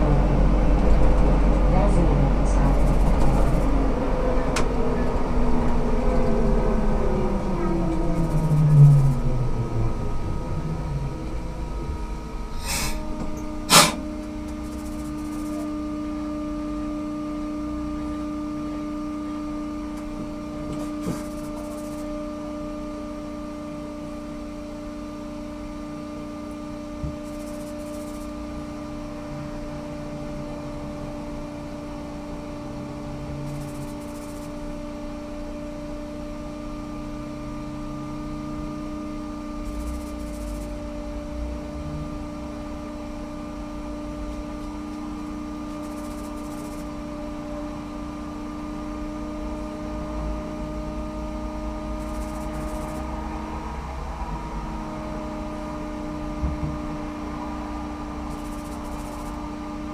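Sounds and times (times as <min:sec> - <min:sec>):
trolleybus running rumble: 0:00.0 - 0:15.7
steady electrical hum: 0:00.0 - 0:59.9
sharp click: 0:12.6 - 0:15.7, 0:52.0 - 0:53.1.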